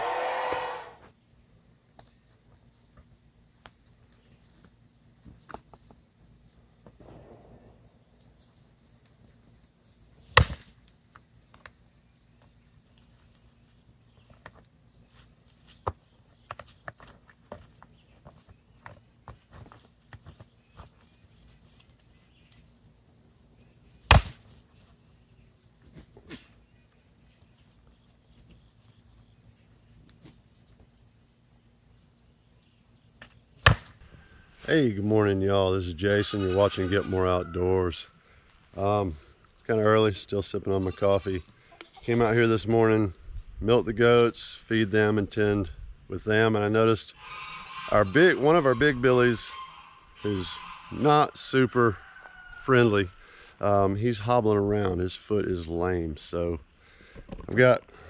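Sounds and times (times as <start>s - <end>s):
high-pitched insect trill: 0.0s - 34.0s
sharp knocks: 10.4s - 10.7s, 24.1s - 24.5s, 33.6s - 34.0s.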